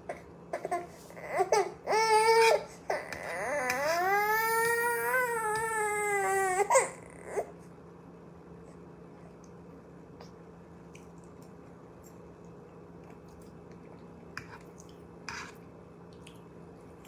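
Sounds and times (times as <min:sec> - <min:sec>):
soft squishy mouth noises: 0:10.2 - 0:17.0.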